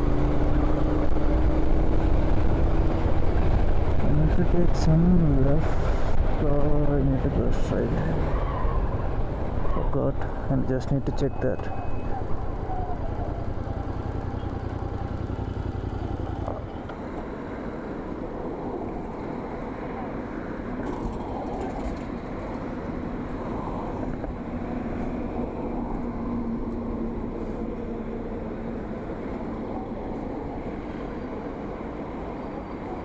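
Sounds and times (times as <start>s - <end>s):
road and wind noise: 0.0s - 33.0s
motorcycle engine running: 11.7s - 16.8s.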